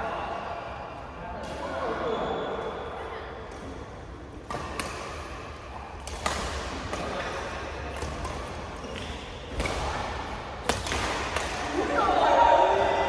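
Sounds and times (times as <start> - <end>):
sports hall background: 0.0 - 13.0
rackets striking shuttlecock: 5.9 - 12.0.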